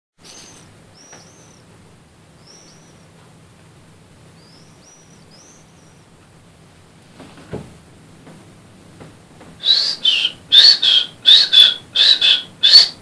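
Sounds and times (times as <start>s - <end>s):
steady low hum: 0.2s - 13.0s
animal high-pitched chirps: 9.6s - 13.0s.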